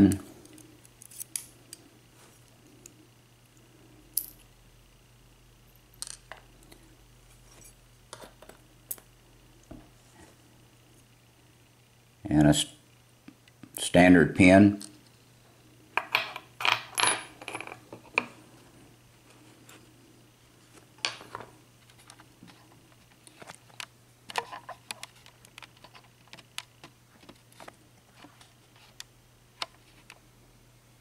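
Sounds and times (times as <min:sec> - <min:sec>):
lock pins clicking and clinking: 0:00.0 - 0:01.5, 0:16.0 - 0:17.8.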